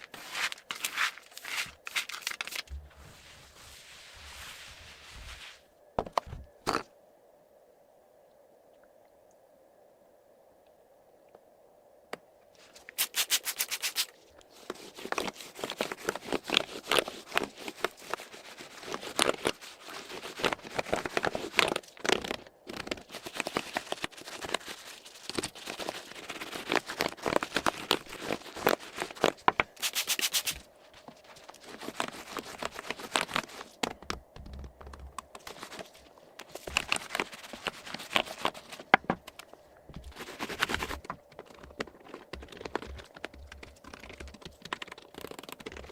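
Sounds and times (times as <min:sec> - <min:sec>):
scraping and rubbing over keyboard: 0:00.0 - 0:06.4, 0:12.6 - 0:45.9
rapid keyboard clicking: 0:40.3 - 0:45.9.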